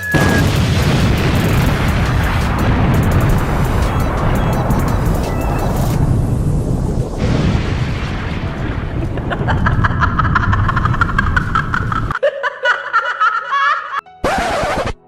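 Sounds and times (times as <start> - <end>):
explosion rumble: 0.1 - 12.2
snickering laugh-like sound: 9.0 - 15.0.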